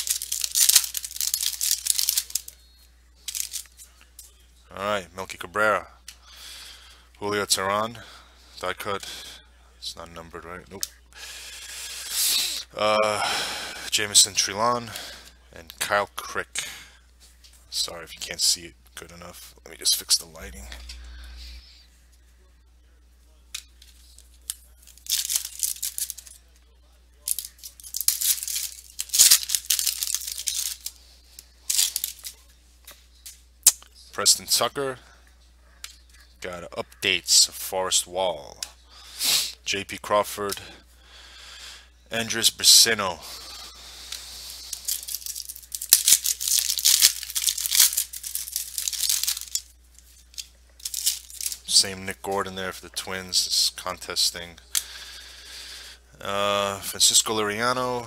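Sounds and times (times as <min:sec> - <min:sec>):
foil wrappers tearing and crinkling: 0:00.0 - 0:02.6, 0:03.3 - 0:03.7, 0:24.4 - 0:26.4, 0:27.2 - 0:31.0, 0:31.7 - 0:32.5, 0:43.9 - 0:49.6, 0:50.9 - 0:51.8.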